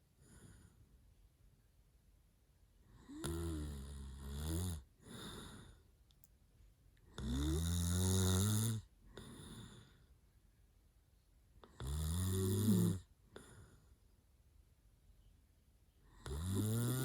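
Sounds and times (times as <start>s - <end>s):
soft breath: 0.0s - 1.2s, 5.0s - 6.0s, 9.0s - 10.3s, 13.2s - 14.2s
man snoring: 3.0s - 5.7s, 7.2s - 9.9s, 11.7s - 13.1s, 16.2s - 17.0s.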